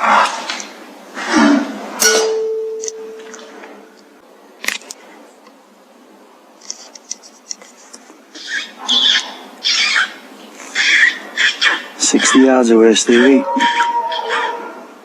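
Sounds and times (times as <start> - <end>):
metallic ring: 2.0 - 3.4.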